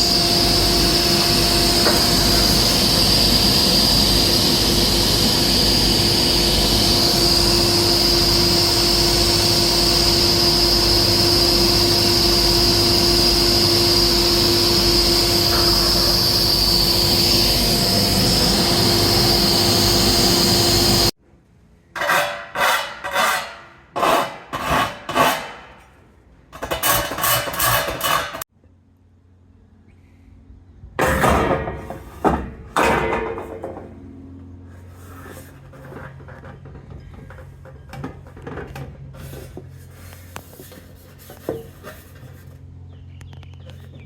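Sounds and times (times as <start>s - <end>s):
power tool whining: 0.0s - 21.2s.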